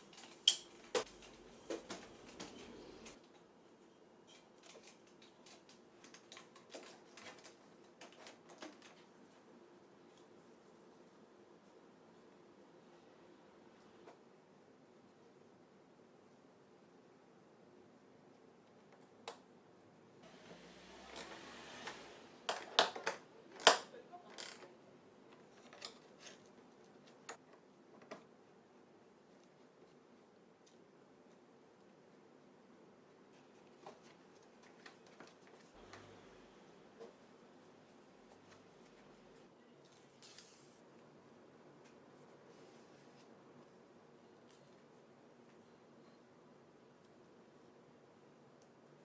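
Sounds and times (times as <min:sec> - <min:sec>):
hard parts clicking and knocking: 0:22.5 - 0:24.7.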